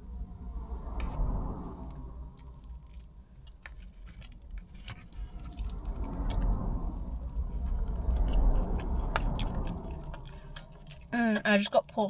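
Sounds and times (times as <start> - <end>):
low rumble: 0.0 - 12.0
small clicks and crackles: 1.6 - 12.0
person chewing: 2.4 - 11.2
squishy food handling: 2.4 - 12.0.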